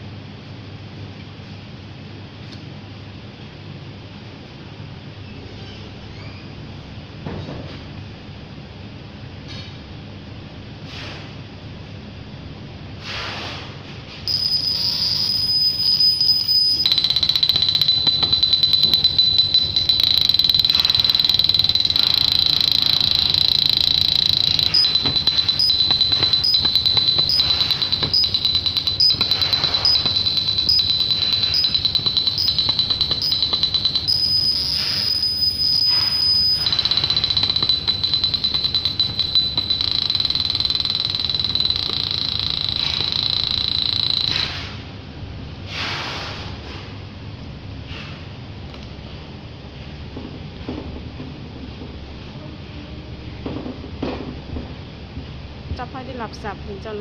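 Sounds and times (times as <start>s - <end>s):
evenly spaced ticks: 14.3s - 44.5s
laser machine high-pitched whine: 14.3s - 44.6s.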